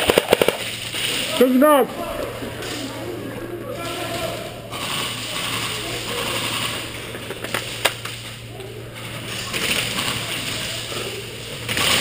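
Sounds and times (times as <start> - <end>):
airsoft guns firing bursts: 0.0 - 1.6, 9.4 - 12.0.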